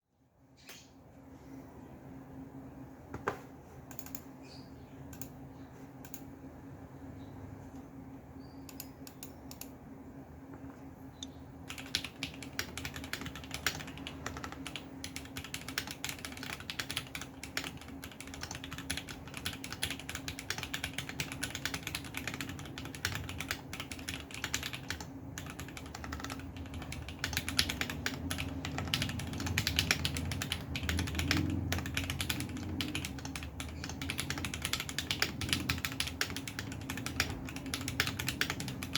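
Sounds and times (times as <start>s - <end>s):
steady low hum: 0.0s - 38.9s
mechanical keyboard typing: 3.9s - 4.3s, 11.7s - 38.9s.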